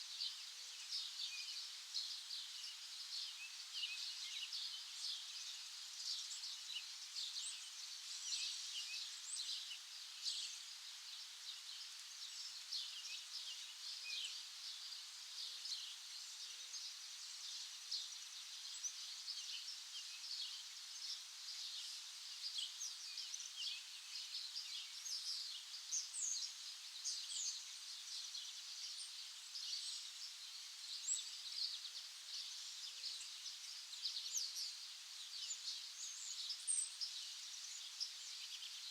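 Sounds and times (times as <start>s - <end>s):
songbirds chirping: 0.1s - 38.9s.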